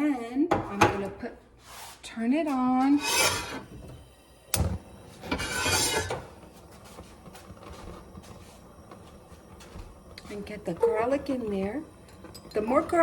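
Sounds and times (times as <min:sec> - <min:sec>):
flame whoosh and hiss: 0:03.3 - 0:13.0.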